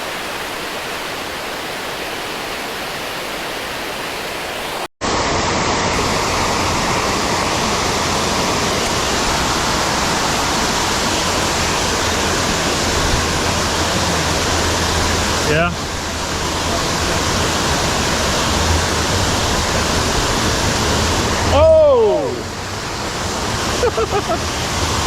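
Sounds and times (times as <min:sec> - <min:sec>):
water pouring over spillway: 0:05.4 - 0:25.0.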